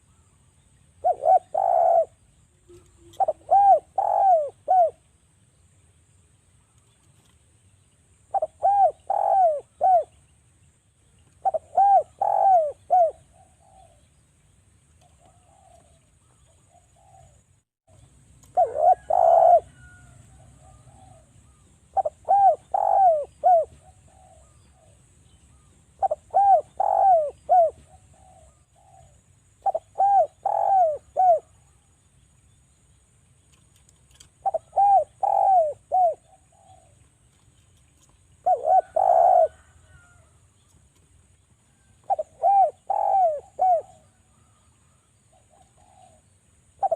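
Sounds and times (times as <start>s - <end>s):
dove cooing: 1.0s - 5.1s, 8.3s - 10.2s, 11.3s - 14.0s, 15.0s - 17.5s, 18.4s - 31.7s, 34.1s - 37.4s, 38.0s - 40.3s, 41.7s - 46.9s.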